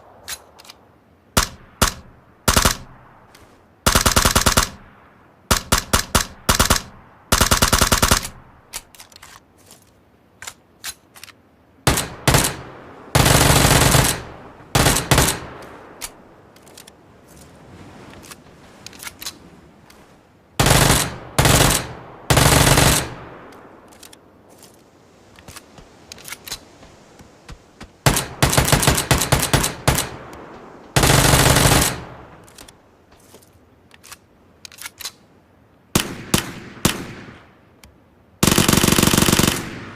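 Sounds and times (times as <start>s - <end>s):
automatic gunfire bursts: 1.4s - 3.0s, 3.8s - 4.9s, 5.5s - 8.4s, 11.9s - 15.6s, 20.6s - 23.4s, 28.0s - 30.3s, 31.0s - 32.4s, 36.0s - 37.4s, 38.4s - 39.9s
single gunshots: 36.0s - 37.5s.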